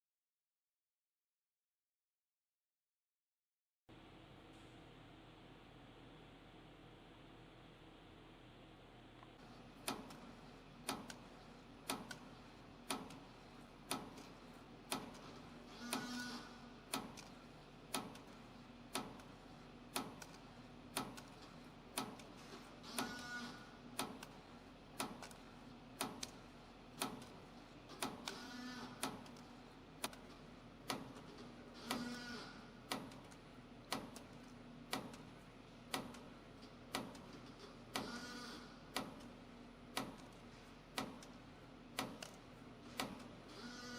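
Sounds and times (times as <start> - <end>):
machine hum: 3.9 - 43.9
machine clicking: 9.4 - 43.9.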